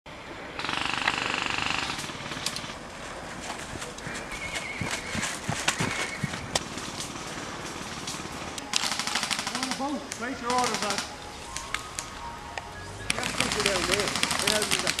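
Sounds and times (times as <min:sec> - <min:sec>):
airsoft gun full-auto burst: 0:00.6 - 0:02.7, 0:07.1 - 0:11.1, 0:13.1 - 0:15.0
sharp clicks and pops: 0:06.5 - 0:15.0.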